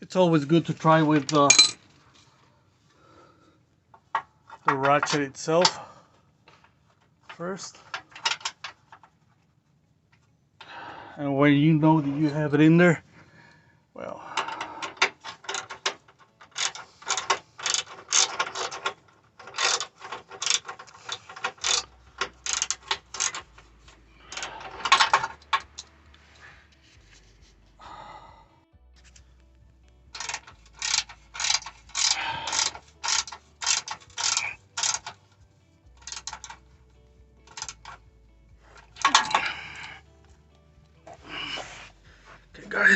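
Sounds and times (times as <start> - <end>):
ratchet wrench clicking: 14.4 - 25.9, 30.1 - 35.4, 36.0 - 36.7, 37.4 - 38.0, 38.7 - 40.0.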